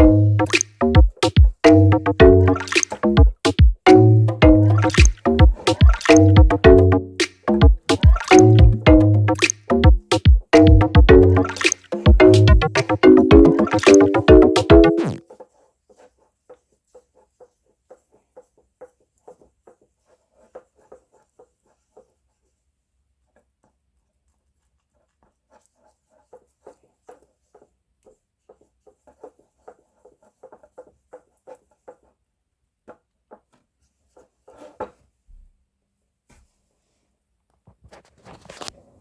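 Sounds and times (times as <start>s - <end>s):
small objects clicking and tapping: 2.4s - 4.0s, 7.2s - 13.0s.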